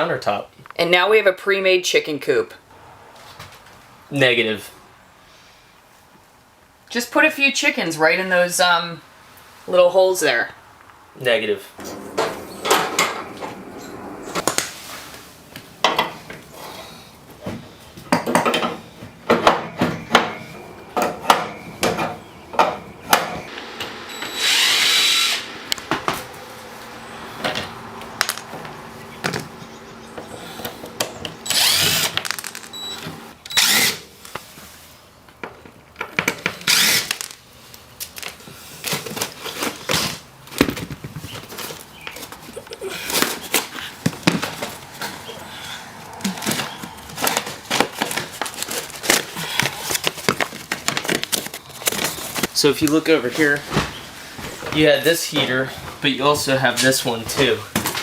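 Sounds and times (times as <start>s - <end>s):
power drill running: 23.5s - 34.1s.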